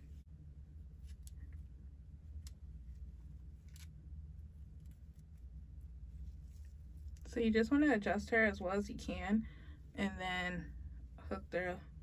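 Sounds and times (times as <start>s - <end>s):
soft ticks and rustles of wig: 0.0s - 8.0s
faint low room hum: 0.0s - 12.0s.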